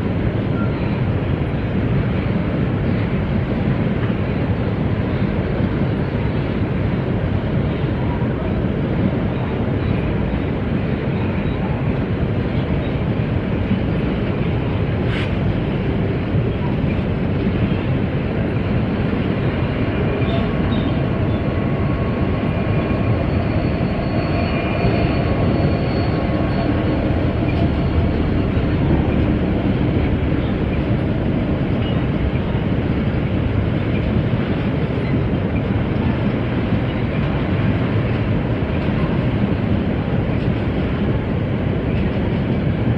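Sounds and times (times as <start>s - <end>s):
wheels rumbling on rails: 0.0s - 42.9s
faint high squeal: 22.8s - 28.0s.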